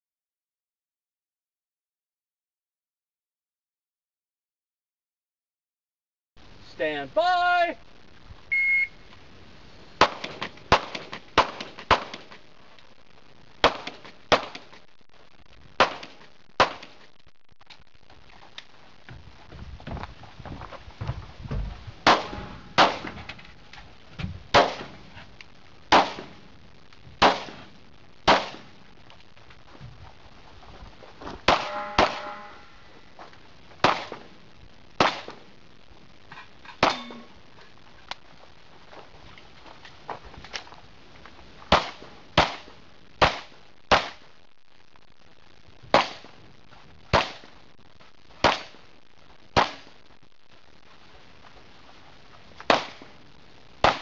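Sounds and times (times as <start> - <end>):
pistol shots: 10.0 - 12.3, 13.6 - 14.6, 15.8 - 17.0, 22.0 - 23.1, 24.5 - 24.9, 25.9 - 26.3, 27.2 - 27.6, 28.3 - 28.7, 31.5 - 32.4, 41.7 - 42.6, 43.2 - 44.2, 49.6 - 49.9.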